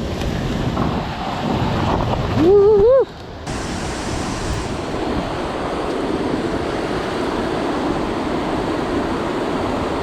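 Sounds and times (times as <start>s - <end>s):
fast-flowing river water rushing: 3.5s - 10.0s.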